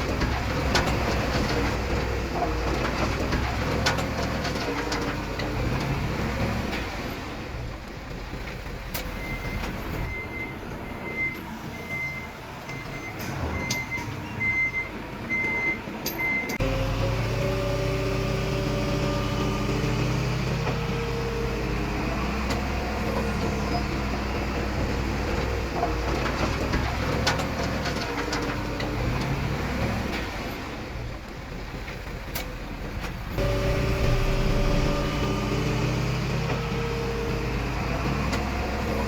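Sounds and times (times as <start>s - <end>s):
diesel engine running: 0.0s - 39.0s
reversing alarm beeping: 9.0s - 16.6s, 33.4s - 36.0s.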